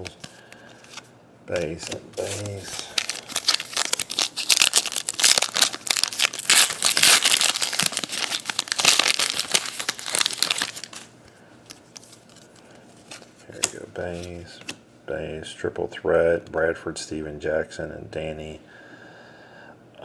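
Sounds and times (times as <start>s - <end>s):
card pack wrapper crinkling: 0.0s - 11.1s, 11.7s - 14.3s.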